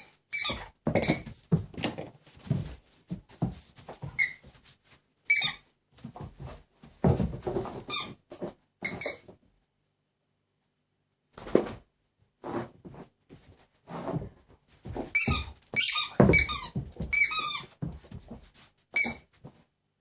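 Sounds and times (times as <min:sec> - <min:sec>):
squeaky dog toy squealing: 0:00.0 - 0:01.2, 0:05.3 - 0:05.6, 0:08.8 - 0:09.3, 0:15.2 - 0:17.7, 0:19.0 - 0:19.3.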